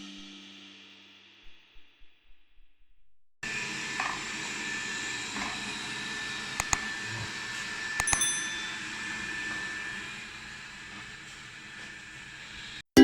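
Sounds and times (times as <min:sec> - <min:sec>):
robot vacuum motor whine: 0:03.4 - 0:12.8
sharp clicks: 0:06.6 - 0:06.8, 0:08.0 - 0:08.3
brief metallic ring: 0:08.1 - 0:08.8.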